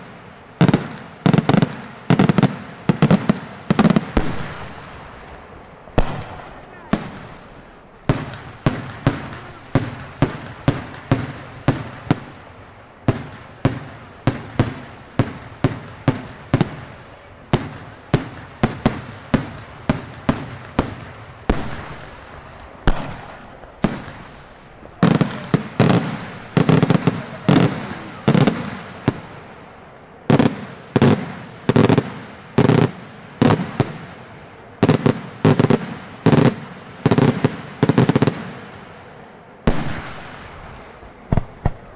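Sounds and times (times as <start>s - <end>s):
fireworks shells bursting: 0.6s - 29.4s.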